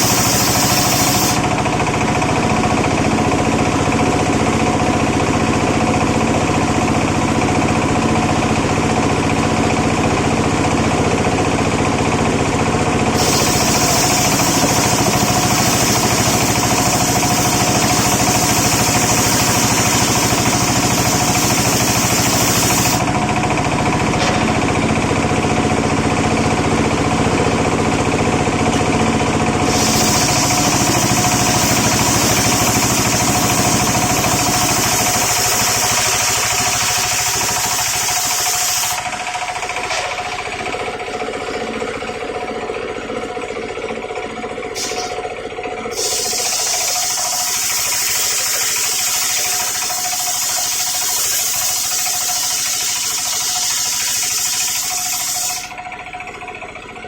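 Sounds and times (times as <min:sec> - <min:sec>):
saw blade cutting wood: 0:00.0 - 0:03.0, 0:13.2 - 0:24.8, 0:29.6 - 0:40.9, 0:44.7 - 0:45.2, 0:45.9 - 0:55.8
engine running: 0:00.0 - 0:57.0.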